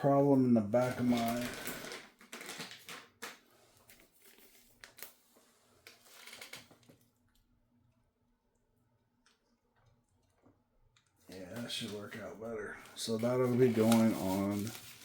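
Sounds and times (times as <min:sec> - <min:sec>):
packaging rustling: 0:00.8 - 0:07.0, 0:12.8 - 0:15.0.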